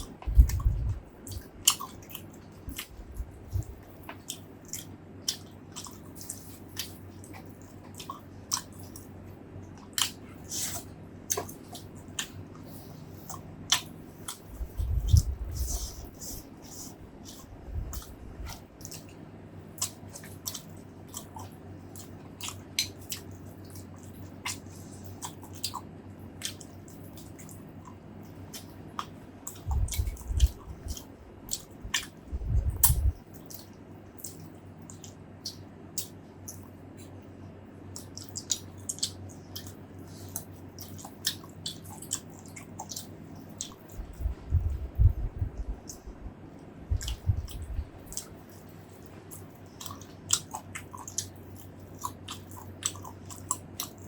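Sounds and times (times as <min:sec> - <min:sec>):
close-miked chewing: 0:00.0 - 0:54.0
heavier low bites: 0:32.3 - 0:33.2, 0:44.0 - 0:48.0.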